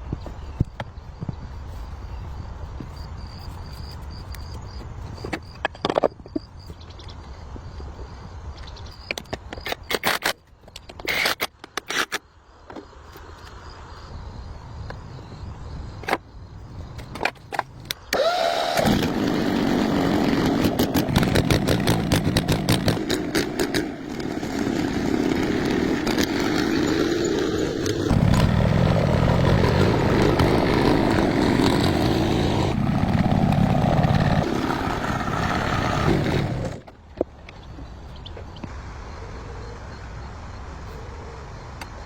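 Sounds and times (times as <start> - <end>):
diesel tractor engine running: 18.2 - 36.8.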